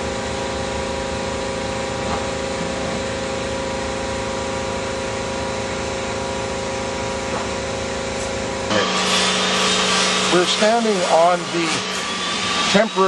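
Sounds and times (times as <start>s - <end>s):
construction machinery humming: 0.0s - 13.0s.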